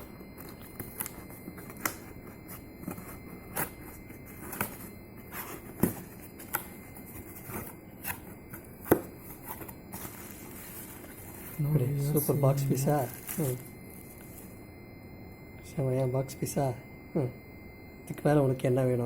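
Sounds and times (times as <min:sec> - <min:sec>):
packaging clicks and crackles: 0:00.4 - 0:02.2.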